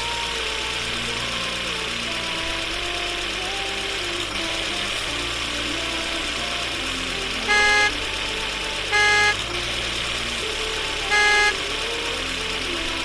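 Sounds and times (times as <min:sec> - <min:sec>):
engine-like hum: 0:00.0 - 0:13.0
short horn beeps: 0:07.4 - 0:08.2, 0:08.9 - 0:09.7, 0:11.1 - 0:11.8.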